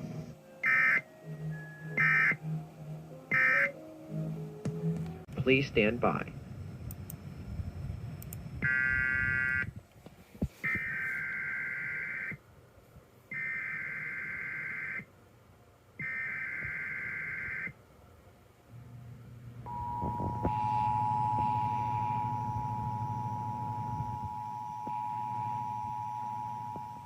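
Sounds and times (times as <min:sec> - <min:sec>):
steady warning alarm tone: 0:00.6 - 0:02.6, 0:03.3 - 0:03.8, 0:08.6 - 0:09.7, 0:10.6 - 0:12.4, 0:13.3 - 0:15.1, 0:16.0 - 0:17.7, 0:19.7 - 0:27.0
low hum: 0:04.1 - 0:10.5, 0:18.6 - 0:27.0.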